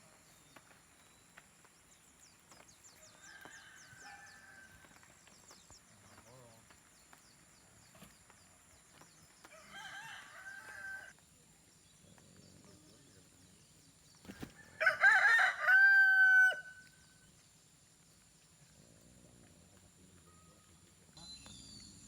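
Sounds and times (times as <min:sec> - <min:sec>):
rooster crowing: 0:03.1 - 0:05.0, 0:09.5 - 0:11.1, 0:14.6 - 0:16.9.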